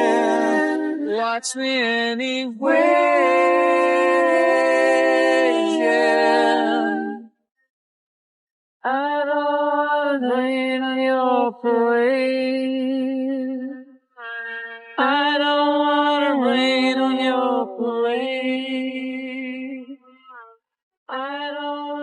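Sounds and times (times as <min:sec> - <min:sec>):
layered sung harmony vocals: 0:00.0 - 0:07.3, 0:08.9 - 0:13.4, 0:14.5 - 0:19.5.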